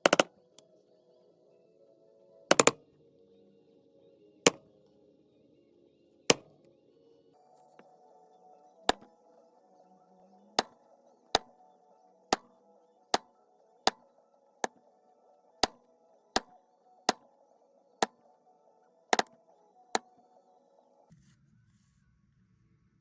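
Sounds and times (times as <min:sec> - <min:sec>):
mallet striking leather stamp: 0:00.0 - 0:00.3, 0:02.5 - 0:02.8, 0:06.3 - 0:06.5
quiet background music: 0:00.0 - 0:23.0.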